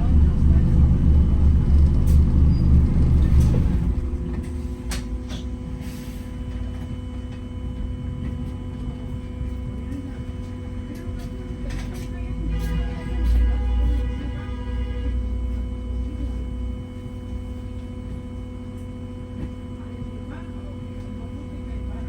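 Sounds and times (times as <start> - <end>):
steady electric hum: 0.0 - 4.8
low bus engine rumble: 0.0 - 22.0.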